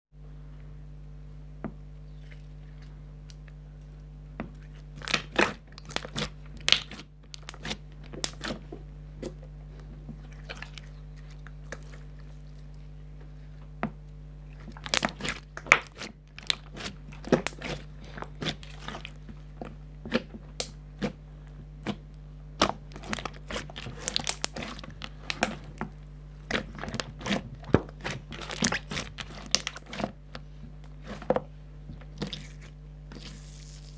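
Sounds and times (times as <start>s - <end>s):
steady low hum: 0.2s - 33.9s
slime crackling and popping: 5.0s - 8.5s, 14.8s - 19.2s, 22.6s - 25.8s, 26.5s - 30.0s.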